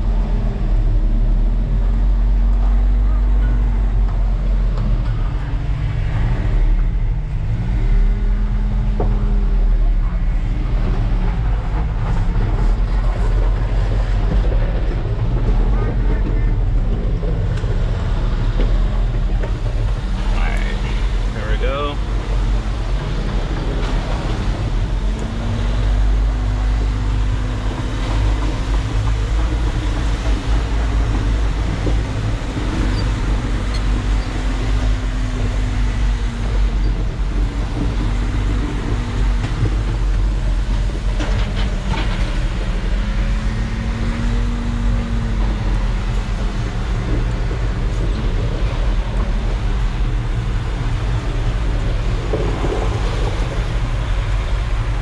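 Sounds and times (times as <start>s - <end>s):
truck diesel engine rumbling: 0.0s - 55.0s.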